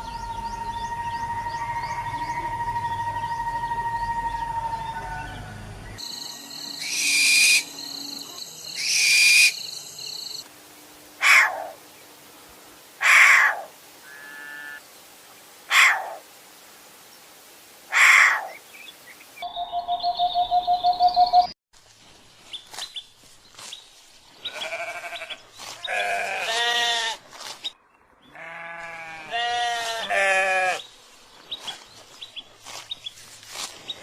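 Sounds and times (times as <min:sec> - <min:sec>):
bird calls: 0:17.9 - 0:21.5.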